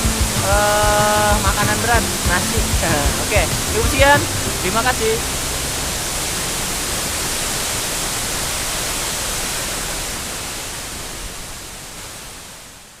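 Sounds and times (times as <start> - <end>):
waterfall roaring: 0.0 - 13.0.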